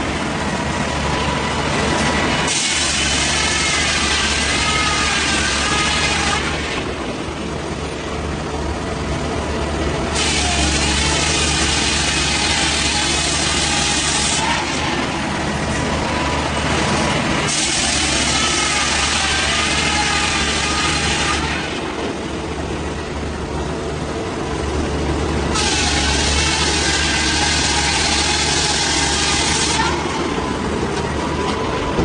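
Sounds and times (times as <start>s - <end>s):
heavy engine running: 0.0s - 32.0s
saw cutting through wood: 1.3s - 6.9s, 10.1s - 22.2s, 25.5s - 30.5s.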